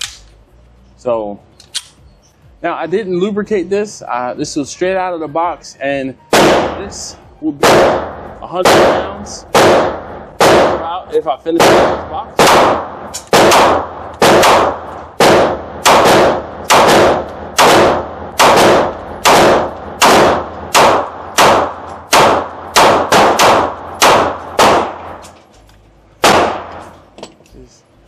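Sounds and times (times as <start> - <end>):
pistol shots: 6.3 - 6.9, 7.6 - 25.4, 26.2 - 27.0.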